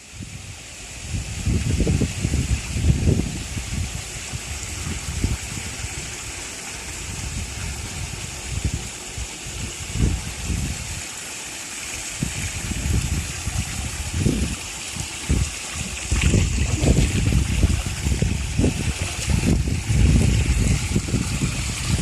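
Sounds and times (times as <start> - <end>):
running water rushing: 0.0 - 22.0
low microphone rumbles: 12.2 - 22.0.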